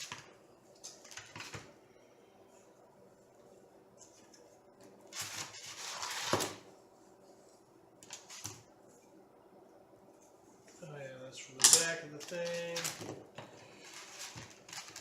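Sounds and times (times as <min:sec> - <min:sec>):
scraping rustle: 0:13.6 - 0:15.0.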